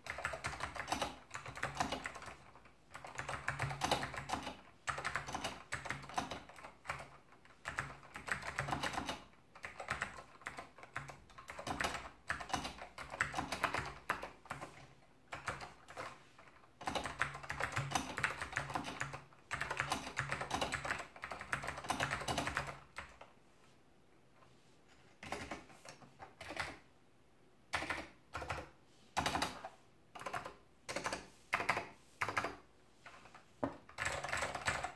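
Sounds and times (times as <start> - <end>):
clicky keyboard typing: 0.0 - 23.3, 25.2 - 26.8, 27.7 - 34.9.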